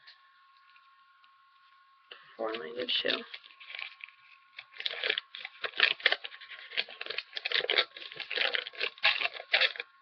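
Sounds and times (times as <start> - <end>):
paper packaging rustling and tearing: 2.5 - 10.0.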